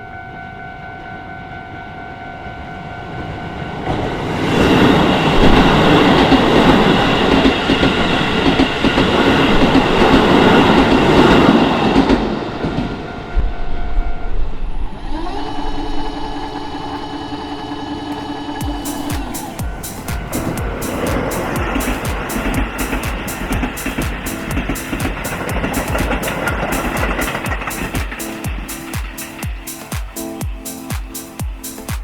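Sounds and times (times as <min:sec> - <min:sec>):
level crossing warning bell: 0:00.0 - 0:14.9, 0:15.6 - 0:32.0
train wheels clattering: 0:03.9 - 0:13.5, 0:18.2 - 0:32.0.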